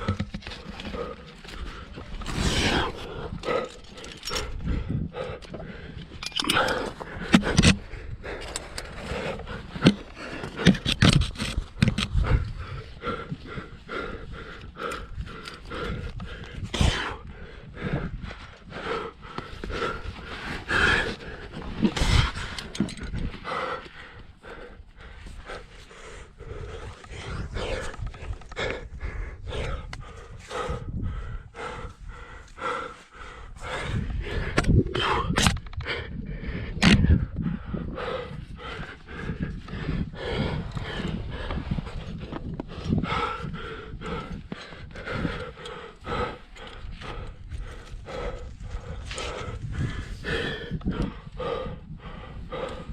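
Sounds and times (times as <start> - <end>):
knocks and scrapes against rock: 0.0 - 4.8, 5.4 - 12.4
person panting heavily: 0.0 - 52.9.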